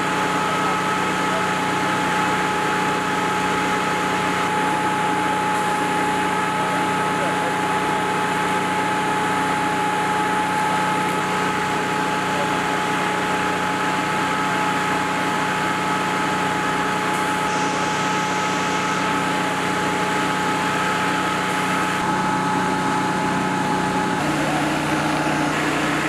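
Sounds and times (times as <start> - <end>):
engine idling: 0.0 - 26.0
constant whining tones: 15.6 - 26.0.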